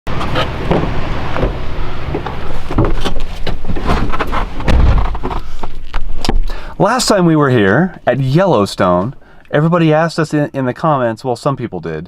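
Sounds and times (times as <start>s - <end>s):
vehicle road noise: 0.1s - 6.4s
small knocks and rattles: 0.1s - 6.5s.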